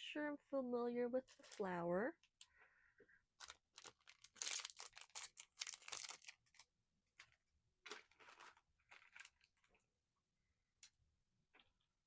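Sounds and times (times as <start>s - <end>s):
plastic packaging crinkling: 1.3s - 1.7s, 3.4s - 9.8s.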